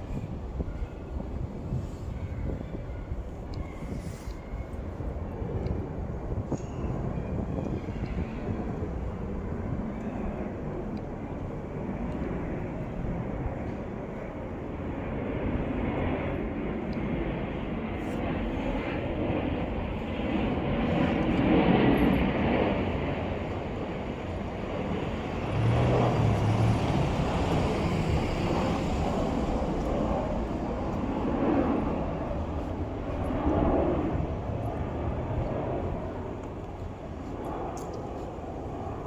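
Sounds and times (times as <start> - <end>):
passing vehicles engine and road noise: 21.9 - 38.7.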